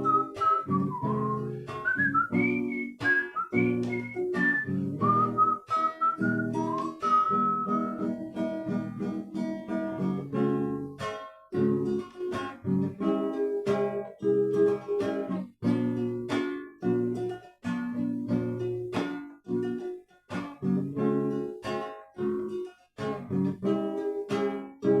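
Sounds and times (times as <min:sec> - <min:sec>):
whistled melody: 0:00.0 - 0:10.1
acoustic guitar strumming chords: 0:00.0 - 0:25.0.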